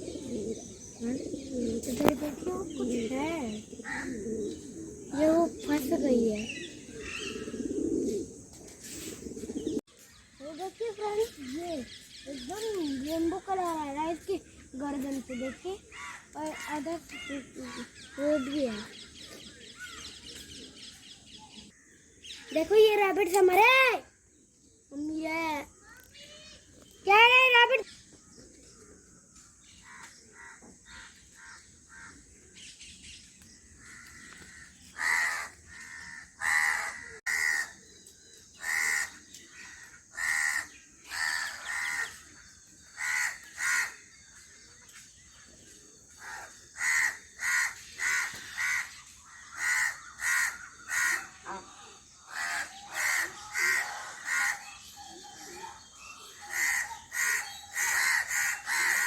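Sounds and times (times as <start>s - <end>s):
crow cawing: 3.8s - 4.2s, 29.8s - 32.2s, 33.8s - 37.8s, 38.6s - 42.2s, 43.0s - 44.0s, 46.2s - 54.9s, 56.4s - 59.0s.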